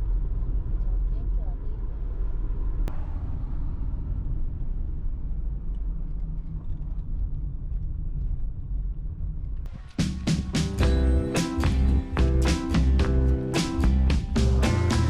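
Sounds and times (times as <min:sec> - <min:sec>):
road noise: 0:09.7 - 0:15.0
car driving low rumble: 0:10.8 - 0:15.0.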